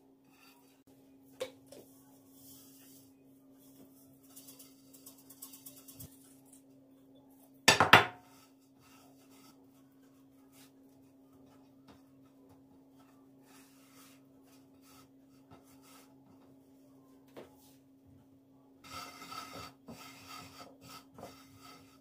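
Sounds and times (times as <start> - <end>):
dishes clattering: 7.7 - 8.2.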